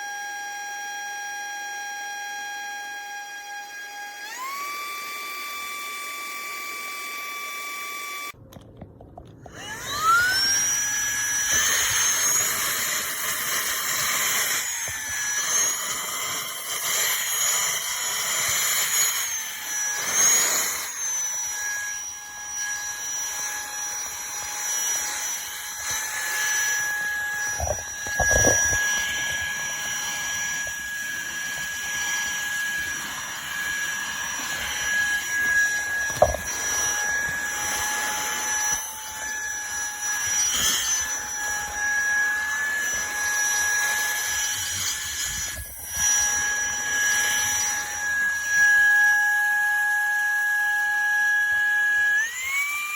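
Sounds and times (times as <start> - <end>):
handheld vacuum motor whine: 0.0 - 52.9.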